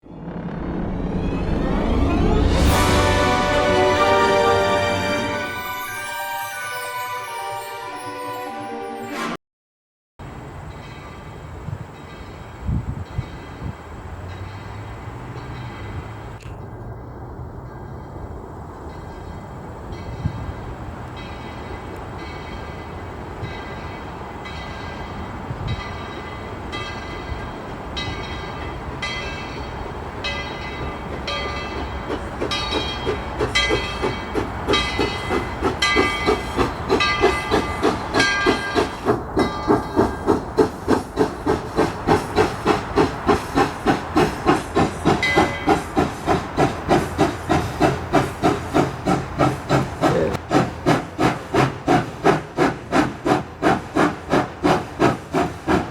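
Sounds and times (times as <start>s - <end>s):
steam locomotive chuffing: 30.3s - 55.9s
steam hissing: 31.8s - 55.9s.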